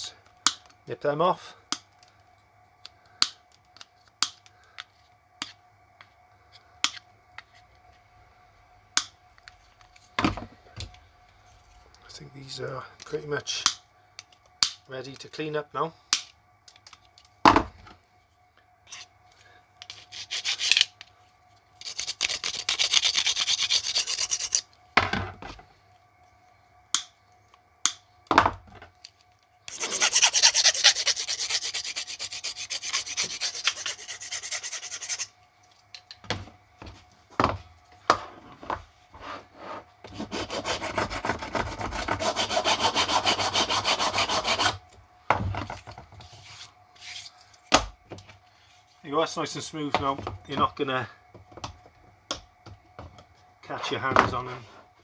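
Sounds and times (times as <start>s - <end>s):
abrasive rubbing on edges: 21.8s - 24.6s, 29.7s - 35.3s, 39.2s - 44.8s.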